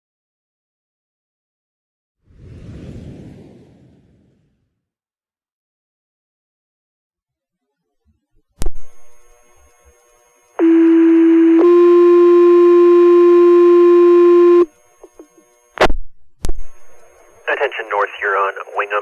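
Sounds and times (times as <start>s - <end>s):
two-tone paging alert over radio: 10.6s - 14.7s.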